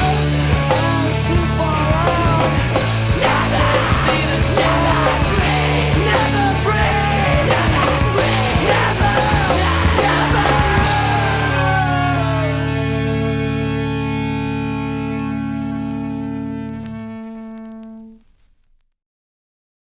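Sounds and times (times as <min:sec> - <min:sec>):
drums with cymbals: 0:00.0 - 0:11.4
bass guitar: 0:00.0 - 0:18.5
distorted electric guitars: 0:00.0 - 0:18.5.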